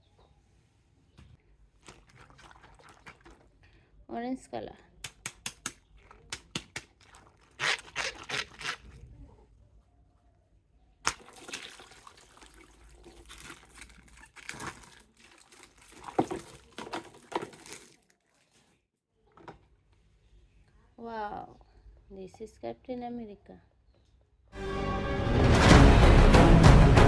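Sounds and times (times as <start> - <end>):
plastic packaging crinkling and tearing: 12.4 - 18.7.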